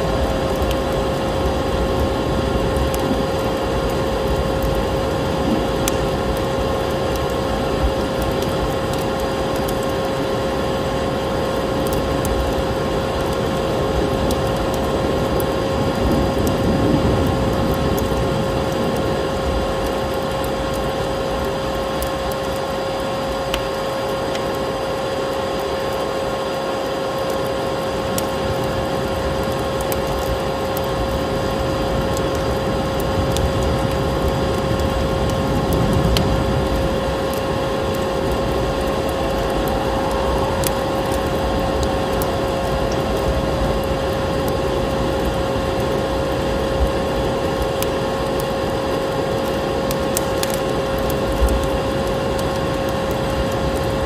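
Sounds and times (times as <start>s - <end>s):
fireplace crackling: 0.0s - 24.8s, 27.2s - 53.9s
low storm wind rumble: 0.0s - 54.0s
vacuum cleaner running: 37.4s - 46.7s.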